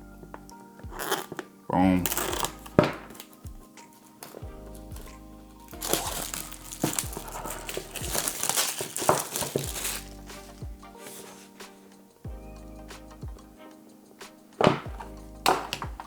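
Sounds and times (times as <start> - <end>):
soft background music: 0.0 - 16.0
packaging crinkling and rustling: 0.9 - 11.6.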